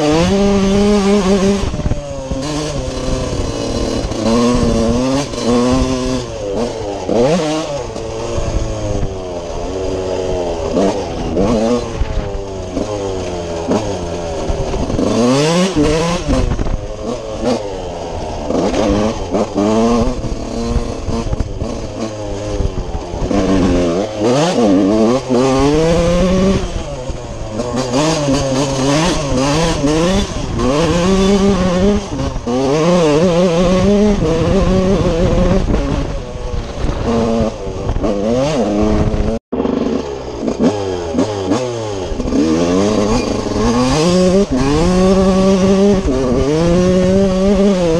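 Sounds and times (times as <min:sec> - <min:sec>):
motocross engine revving: 0:00.0 - 0:47.9.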